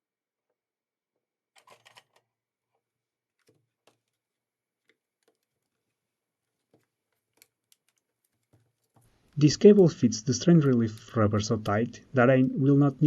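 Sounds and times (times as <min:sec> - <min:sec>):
small parts clicking: 0:04.9 - 0:13.0.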